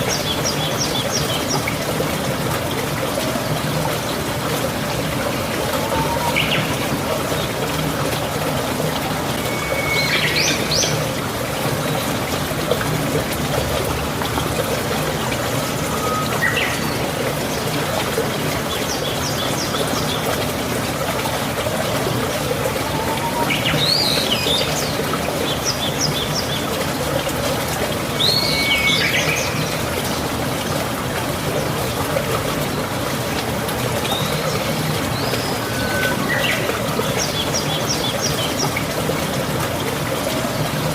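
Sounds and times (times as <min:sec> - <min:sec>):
running water: 0:00.0 - 0:40.9
songbirds whistling and chirping: 0:05.7 - 0:06.9, 0:09.3 - 0:11.1, 0:15.8 - 0:17.1, 0:22.6 - 0:26.5, 0:28.2 - 0:29.7, 0:34.1 - 0:38.8.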